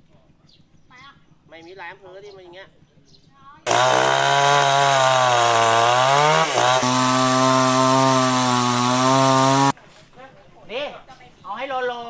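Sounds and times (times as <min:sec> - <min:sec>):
chainsaw running: 0:03.7 - 0:09.8.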